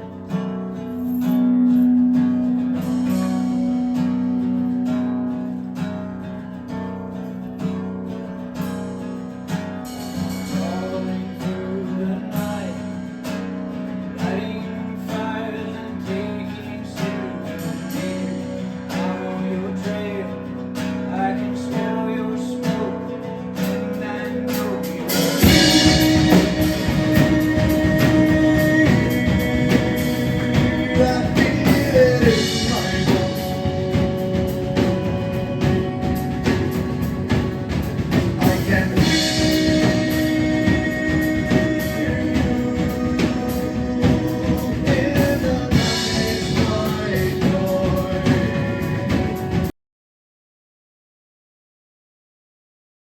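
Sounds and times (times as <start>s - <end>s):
strummed acoustic guitar: 0.0s - 49.7s
person singing: 1.4s - 5.1s, 10.0s - 13.1s, 14.2s - 49.7s
full band with drums: 1.5s - 4.2s, 9.8s - 11.6s, 23.6s - 49.7s.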